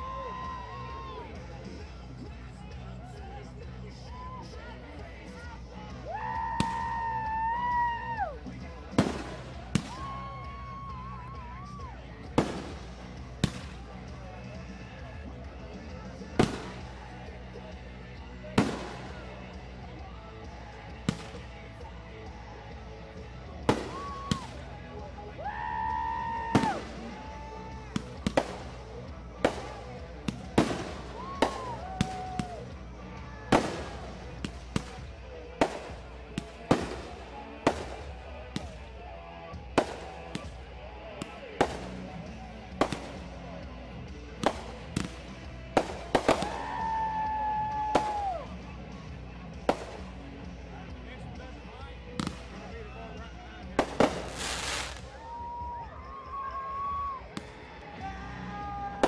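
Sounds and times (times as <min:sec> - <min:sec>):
song playing: 0:00.0 - 0:59.0
firework bangs: 0:08.9 - 0:10.1, 0:12.4 - 0:13.9, 0:16.4 - 0:17.0, 0:18.6 - 0:19.3, 0:23.6 - 0:24.6, 0:26.5 - 0:27.2, 0:27.8 - 0:32.6, 0:33.5 - 0:38.8, 0:39.8 - 0:42.1, 0:42.8 - 0:43.3, 0:44.4 - 0:47.0, 0:49.7 - 0:50.2, 0:52.2 - 0:52.7, 0:53.8 - 0:55.1
firework whistling: 0:54.0 - 0:55.1.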